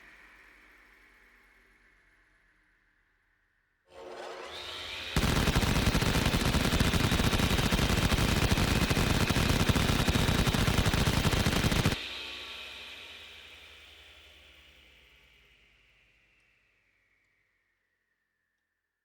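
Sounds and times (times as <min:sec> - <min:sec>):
whine: 0:04.8 - 0:13.5
machine gun rapid fire: 0:05.2 - 0:12.0.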